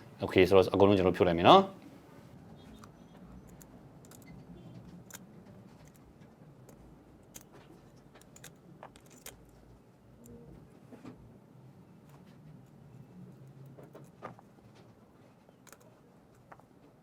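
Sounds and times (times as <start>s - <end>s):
small clicks and taps: 2.6s - 10.4s, 12.0s - 17.0s.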